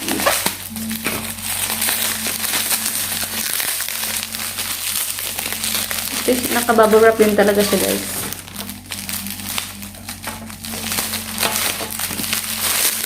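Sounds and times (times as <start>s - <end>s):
bubble wrap crinkling: 0.0s - 13.0s.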